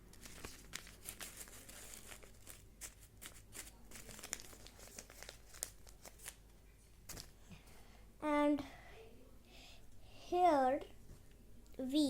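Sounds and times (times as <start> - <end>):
paper rustling and crinkling: 0.0 - 7.4.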